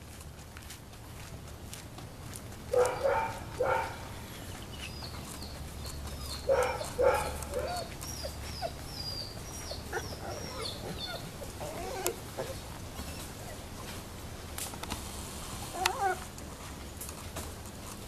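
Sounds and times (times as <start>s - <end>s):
dog barking: 2.7s - 4.1s, 6.4s - 7.9s.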